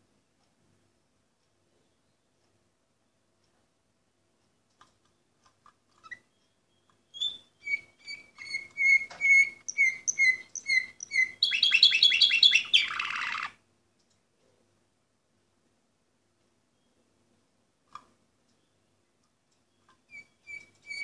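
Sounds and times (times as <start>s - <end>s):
faint clicks: 4.4s - 11.1s, 12.8s - 14.6s, 17.8s - 21.0s
canary singing: 6.0s - 13.6s, 19.6s - 21.0s.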